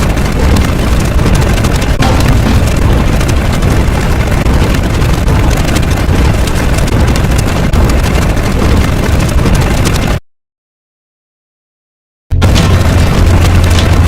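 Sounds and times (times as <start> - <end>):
dense bass-heavy noise: 0.0 - 8.0, 12.3 - 14.0.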